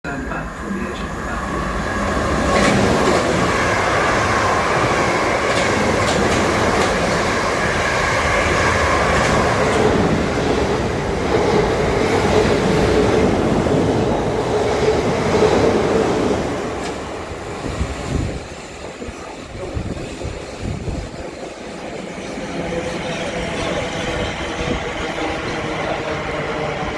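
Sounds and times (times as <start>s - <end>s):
train whine: 0.0s - 26.9s
train wheels rumbling: 0.1s - 26.9s
clickety-clack over rail joints: 2.5s - 3.5s, 5.4s - 7.4s, 8.7s - 10.2s.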